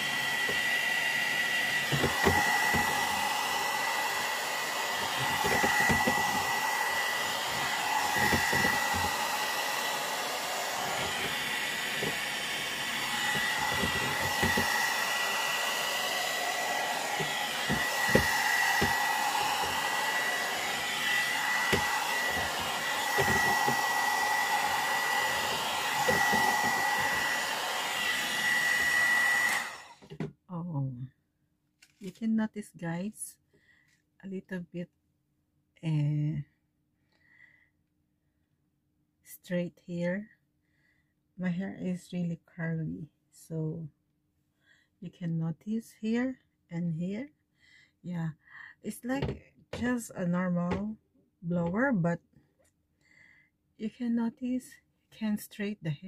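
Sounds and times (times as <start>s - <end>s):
hot air brush blowing: 0.0s - 30.1s.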